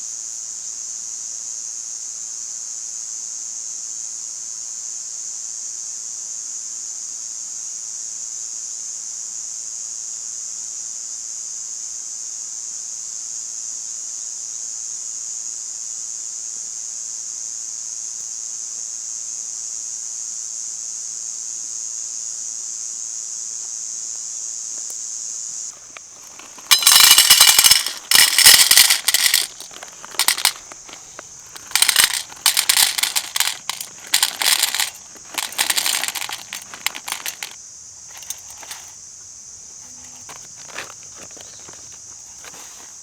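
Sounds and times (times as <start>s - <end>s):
rustling and crackling handling noise: 25.8s - 39.0s, 39.7s - 43.0s
insects droning: 26.2s - 43.0s.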